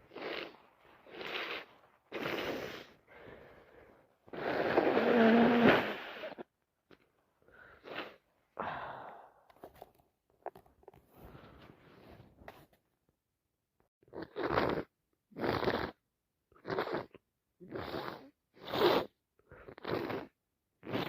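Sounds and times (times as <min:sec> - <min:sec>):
woman sniffing hard: 0:00.0 - 0:03.3, 0:07.6 - 0:08.8
loud nasal blast: 0:00.1 - 0:03.0, 0:04.3 - 0:06.5, 0:07.8 - 0:08.2, 0:16.6 - 0:21.0.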